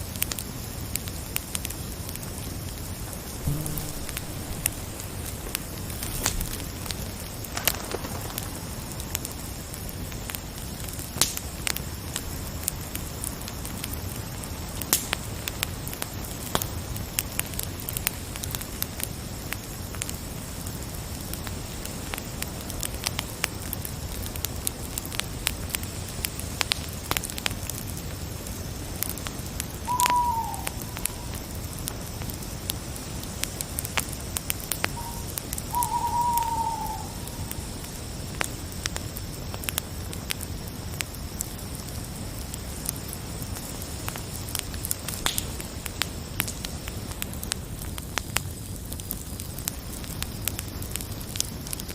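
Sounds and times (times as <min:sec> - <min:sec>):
wood fire crackling: 0:00.0 - 0:51.9.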